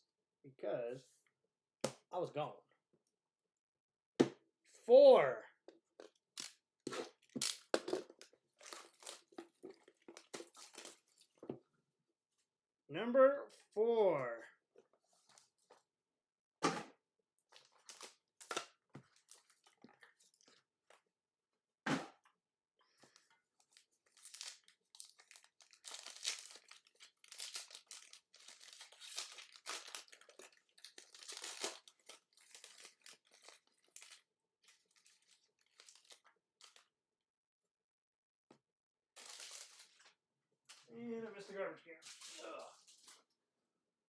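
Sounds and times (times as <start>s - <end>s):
plastic wrapping tearing and crinkling: 6.4s - 11.4s, 17.5s - 19.8s, 23.6s - 36.8s, 39.2s - 40.0s.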